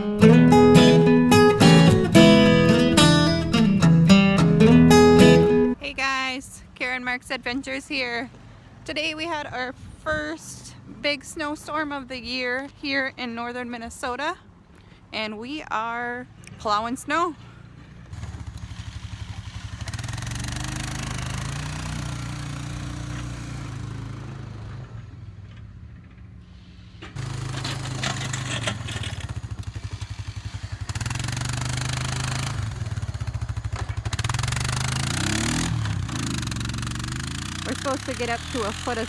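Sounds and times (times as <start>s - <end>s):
vehicle engine running: 0.0s - 5.8s, 17.8s - 25.1s, 27.2s - 39.0s.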